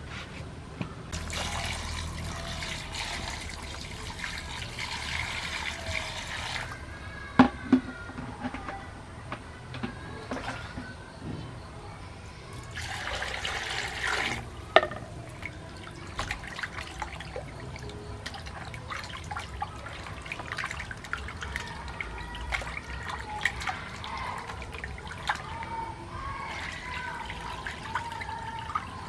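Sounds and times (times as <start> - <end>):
water splashing and trickling: 1.0 - 29.0.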